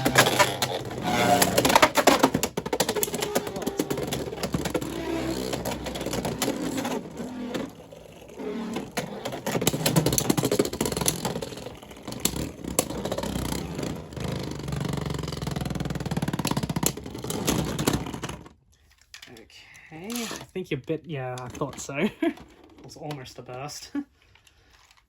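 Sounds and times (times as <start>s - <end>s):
spinning tops whirring: 0.0s - 2.0s.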